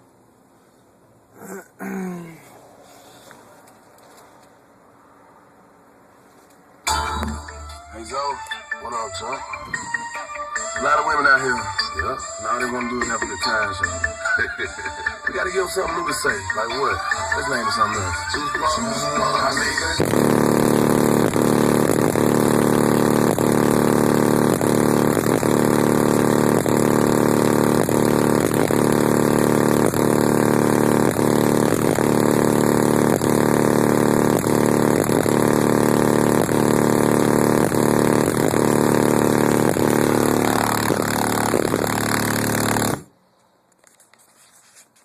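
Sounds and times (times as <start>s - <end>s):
distorted subwoofer bass tone: 6.9s - 8.2s, 18.3s - 43.1s.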